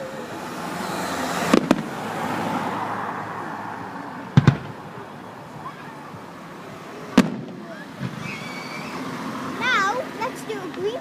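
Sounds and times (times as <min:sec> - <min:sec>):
fireworks hiss and crackle: 0:00.0 - 0:02.4, 0:04.3 - 0:11.0
fireworks sharp bangs: 0:01.0 - 0:02.4, 0:04.3 - 0:05.0, 0:07.0 - 0:09.0.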